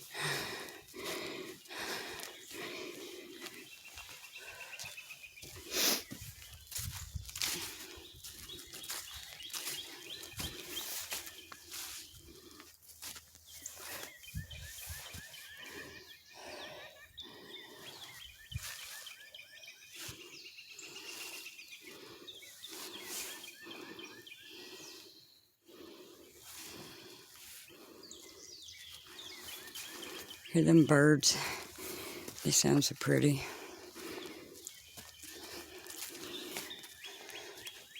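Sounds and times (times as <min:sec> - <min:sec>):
footsteps crunching through dry leaves: 0:00.0 - 0:15.4, 0:26.4 - 0:30.6, 0:31.4 - 0:37.9
small birds chirping: 0:00.0 - 0:37.9.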